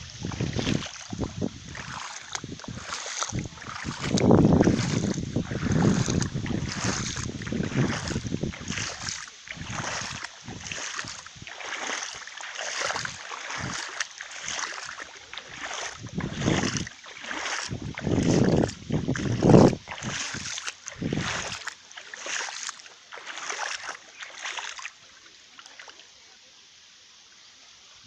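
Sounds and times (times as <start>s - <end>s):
wind buffeting microphone: 0.0s - 12.1s, 12.7s - 21.7s.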